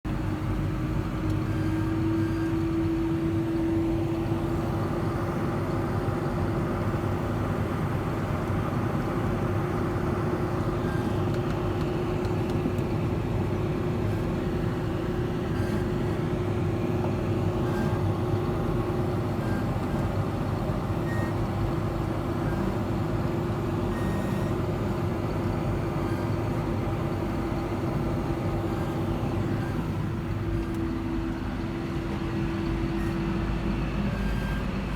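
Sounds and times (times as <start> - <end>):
diesel engine rumbling: 24.7 - 34.9.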